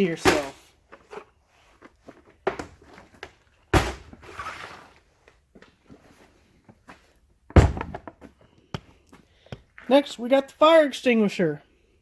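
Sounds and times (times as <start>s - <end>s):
heavy thud: 7.5s - 8.2s.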